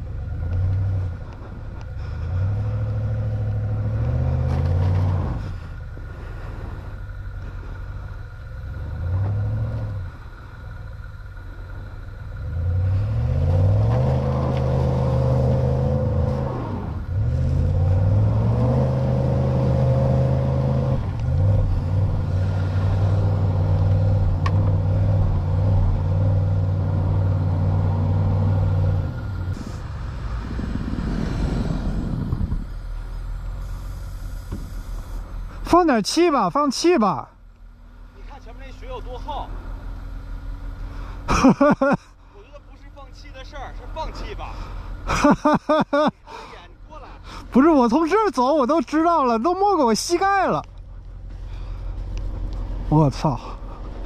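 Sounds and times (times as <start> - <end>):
car engine revving under load: 0.0 - 35.7.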